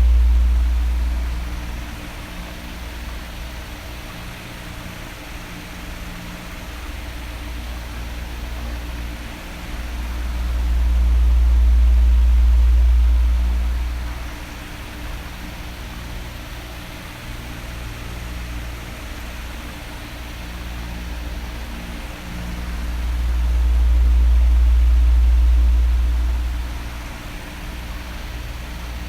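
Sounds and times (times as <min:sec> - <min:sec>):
air rumble on microphone: 0:00.0 - 0:03.5, 0:07.9 - 0:15.5, 0:21.2 - 0:29.0
electric fan blowing: 0:00.0 - 0:29.0.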